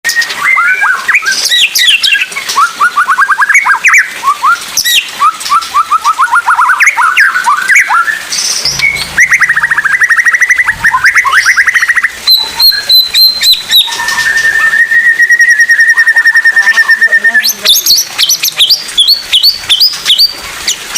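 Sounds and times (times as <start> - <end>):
bird singing: 4.9 - 20.3.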